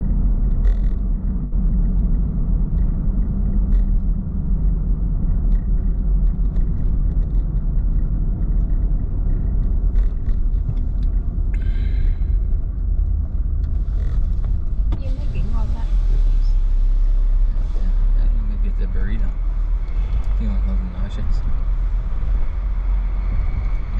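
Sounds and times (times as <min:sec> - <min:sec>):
car road and engine rumble: 0:00.0 - 0:23.9.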